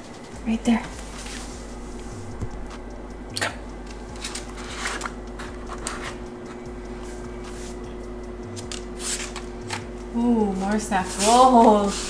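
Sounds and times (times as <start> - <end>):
cardboard and plastic rustling: 3.9 - 6.6.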